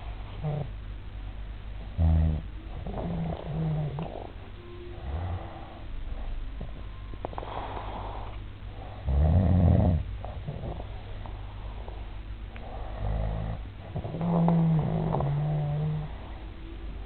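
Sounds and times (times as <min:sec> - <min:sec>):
man snoring: 0:02.0 - 0:04.3, 0:05.0 - 0:05.8, 0:09.0 - 0:10.8, 0:12.6 - 0:16.2
breathy breathing: 0:02.0 - 0:09.3, 0:10.0 - 0:16.6.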